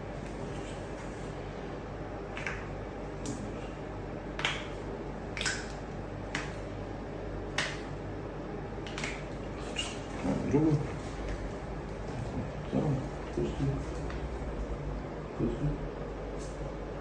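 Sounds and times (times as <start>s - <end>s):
sharp snapping clicks: 4.4s - 6.6s, 7.5s - 7.9s, 8.8s - 9.3s.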